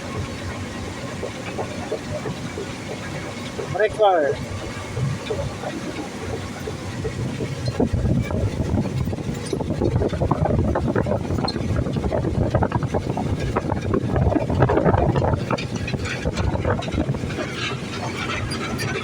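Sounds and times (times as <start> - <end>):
excavator rumbling and rattling: 0.0 - 19.0.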